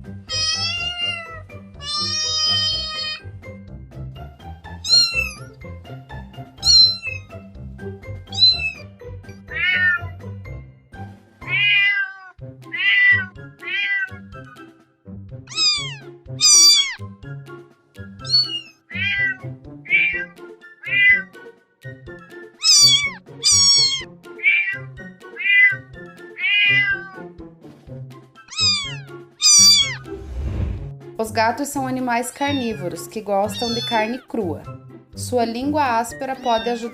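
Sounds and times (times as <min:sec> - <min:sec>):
background music: 0:00.0 - 0:36.9
cats meowing: 0:00.3 - 0:03.3, 0:04.8 - 0:05.5, 0:06.6 - 0:07.3, 0:08.3 - 0:08.9, 0:09.5 - 0:10.2, 0:11.4 - 0:14.4, 0:15.5 - 0:17.0, 0:18.2 - 0:21.4, 0:22.6 - 0:27.3, 0:28.5 - 0:30.1, 0:32.4 - 0:34.3, 0:36.4 - 0:36.9.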